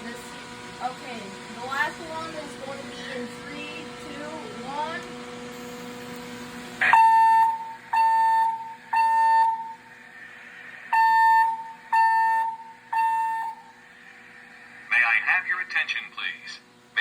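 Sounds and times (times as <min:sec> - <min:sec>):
fire alarm beeps: 0:06.8 - 0:09.9, 0:10.9 - 0:13.8.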